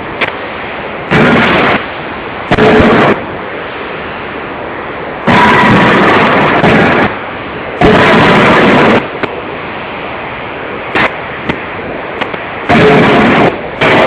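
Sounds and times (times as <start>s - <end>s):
forging hammer noisy bursts: 1.1s - 3.3s, 5.2s - 9.4s, 10.8s - 14.0s.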